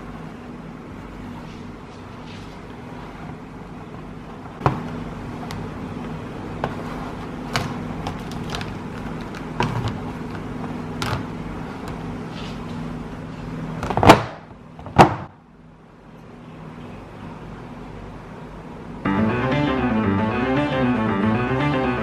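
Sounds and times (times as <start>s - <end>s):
steady low hum: 15.7s - 22.0s.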